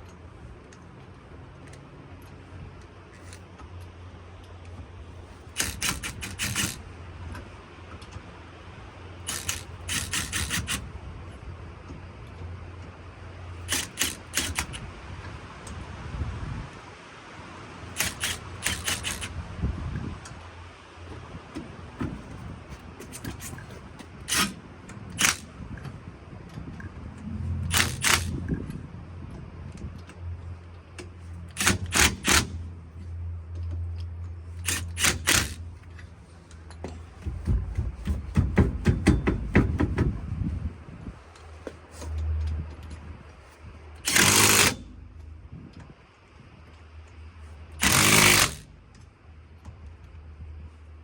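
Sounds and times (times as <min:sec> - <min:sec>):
metallic tool clicks and clanks: 0:05.5 - 0:06.8, 0:09.2 - 0:10.9, 0:13.6 - 0:14.8, 0:18.0 - 0:19.4, 0:23.0 - 0:25.5, 0:27.6 - 0:28.7, 0:31.5 - 0:32.6, 0:34.0 - 0:37.0, 0:44.0 - 0:45.3, 0:47.8 - 0:48.7.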